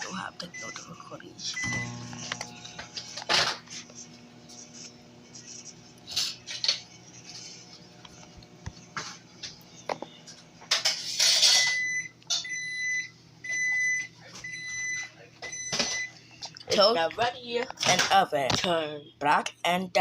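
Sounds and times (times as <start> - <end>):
microwave oven humming: 0.0 - 19.4
long electronic beeps: 1.6 - 2.6.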